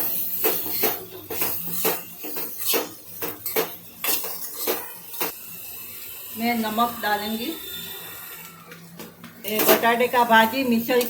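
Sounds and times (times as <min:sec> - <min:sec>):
metal spoon scraping a cooking pan: 0:00.0 - 0:08.4.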